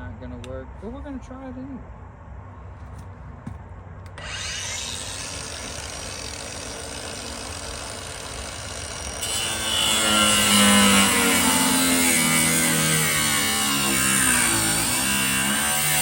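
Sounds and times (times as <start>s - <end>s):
power tool grinding sheet metal: 4.2s - 16.0s.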